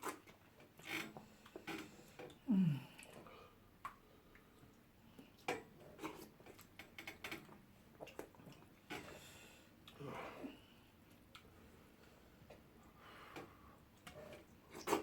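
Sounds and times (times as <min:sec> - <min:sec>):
chewing smacks and clicks: 0:08.0 - 0:08.7.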